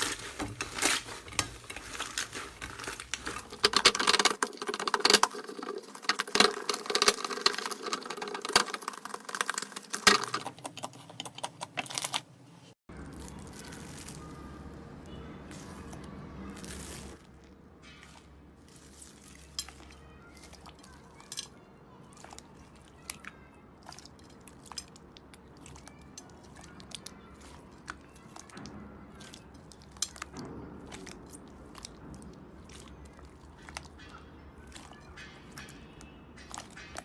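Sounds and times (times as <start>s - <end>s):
slime crackling and popping: 0.0s - 10.4s.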